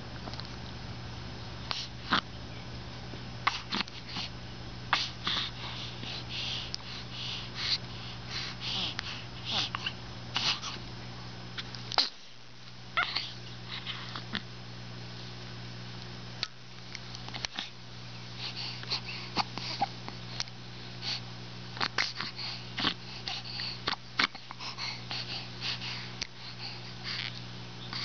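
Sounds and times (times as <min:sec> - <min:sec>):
sniffling breaths through nose: 0:03.5 - 0:10.8, 0:17.4 - 0:28.0.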